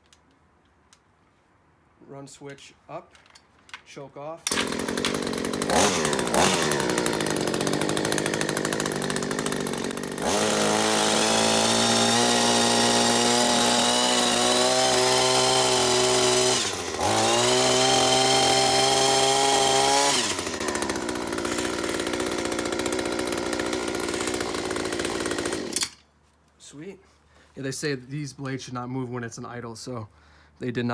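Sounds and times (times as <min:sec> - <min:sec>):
hedge trimmer engine revving: 0:04.4 - 0:26.0.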